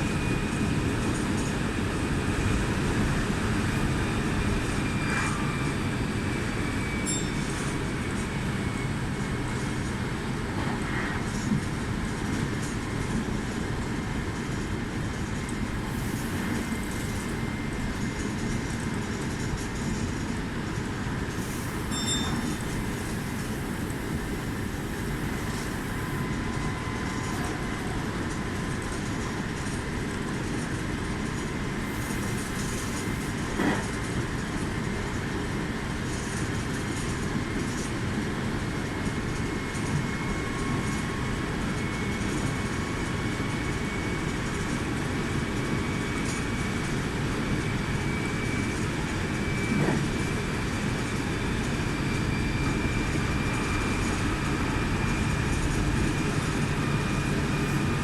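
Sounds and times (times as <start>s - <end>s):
train wheels rumbling on rail: 0.0s - 58.0s
high motor whine: 21.3s - 29.4s, 47.5s - 58.0s.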